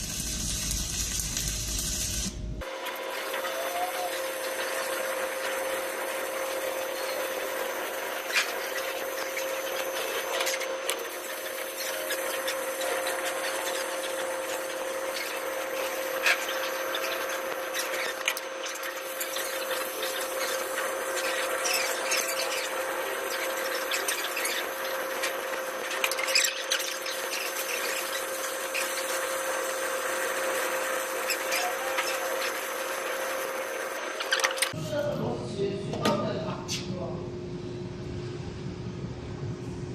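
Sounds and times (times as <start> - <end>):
welder crackling hiss: 0.0 - 2.6
welder whine: 0.0 - 39.9.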